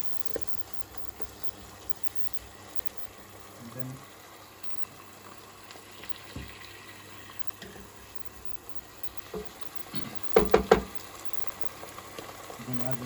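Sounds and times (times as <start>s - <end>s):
pan contents sizzling: 0.0s - 13.0s
ringing knocks on cooking pan: 10.3s - 11.0s.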